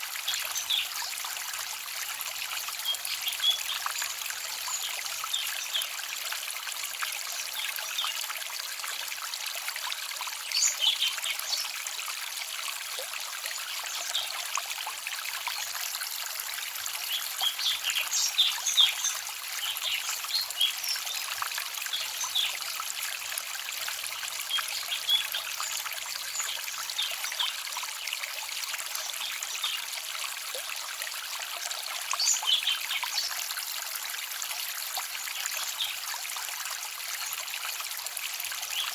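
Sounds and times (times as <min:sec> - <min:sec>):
stream trickling and babbling: 0:00.0 - 0:38.9
small birds chirping: 0:10.5 - 0:11.8, 0:17.1 - 0:21.3, 0:21.9 - 0:22.6, 0:24.2 - 0:27.6, 0:32.1 - 0:33.4.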